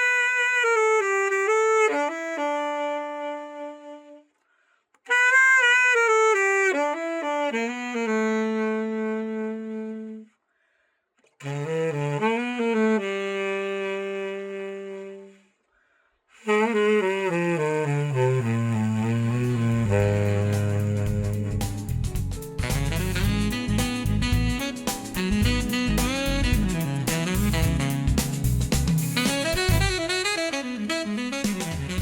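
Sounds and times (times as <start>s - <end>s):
tenor saxophone phrases: 0.0s - 4.3s, 5.1s - 10.3s, 11.4s - 15.5s, 16.3s - 28.3s, 29.2s - 32.0s.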